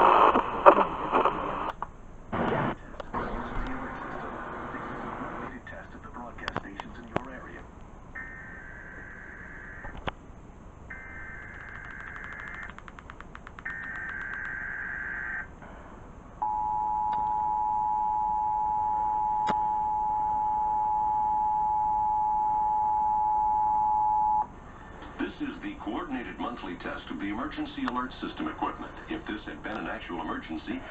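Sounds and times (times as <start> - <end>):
steady two-tone alarm: 8.2 - 9.9, 10.9 - 12.7, 13.7 - 15.5, 16.4 - 24.5.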